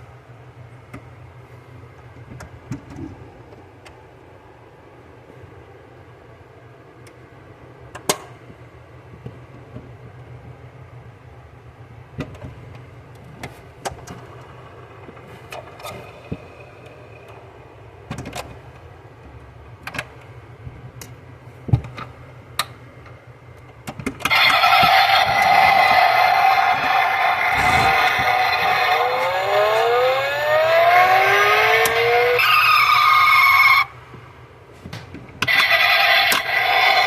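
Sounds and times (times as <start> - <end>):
electronic engine sound effect: 24.3 - 34.0.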